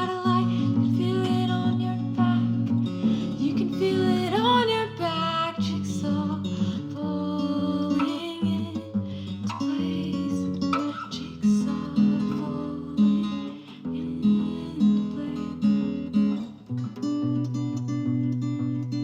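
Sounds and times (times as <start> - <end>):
acoustic guitar strumming: 7.8 - 19.0.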